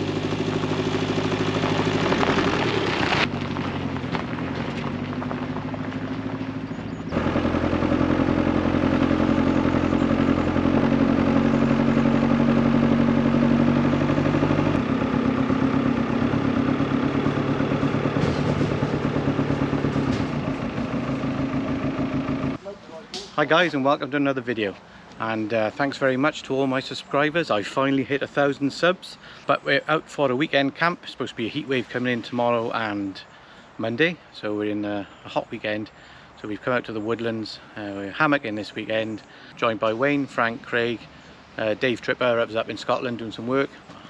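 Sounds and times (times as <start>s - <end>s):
vehicle engine running: 0.0s - 22.6s.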